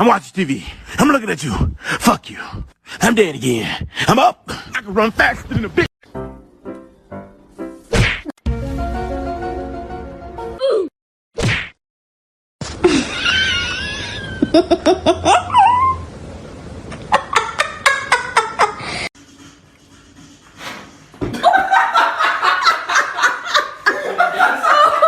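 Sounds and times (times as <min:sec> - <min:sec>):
people laughing: 0:21.3 - 0:25.0.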